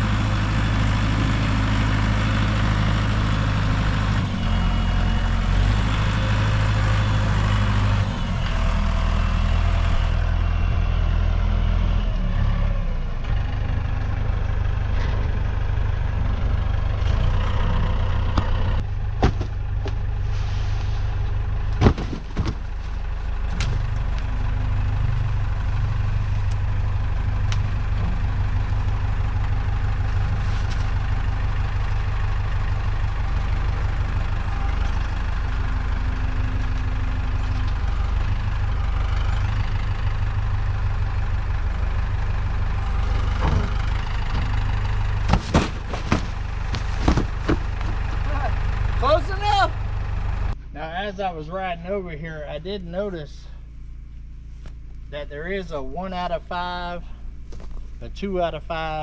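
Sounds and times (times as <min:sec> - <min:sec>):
vehicle engine idling: 0:00.0 - 0:59.0.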